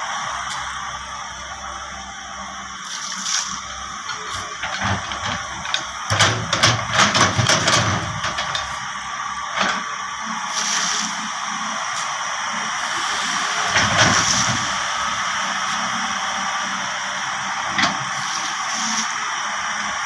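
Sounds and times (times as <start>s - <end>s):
excavator mechanical hiss: 0.0s - 20.0s.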